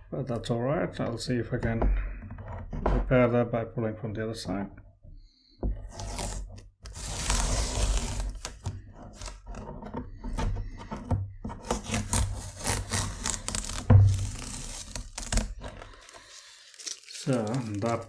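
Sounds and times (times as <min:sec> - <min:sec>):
tape peeling off paper: 0:06.0 - 0:09.4, 0:11.6 - 0:18.0.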